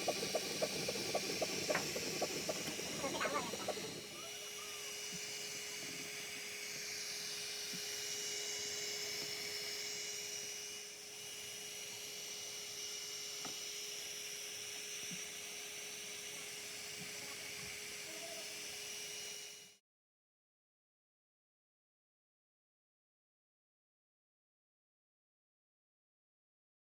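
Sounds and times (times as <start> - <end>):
three d printer hum: 0.0 - 5.9
high wavering whine: 0.0 - 11.0.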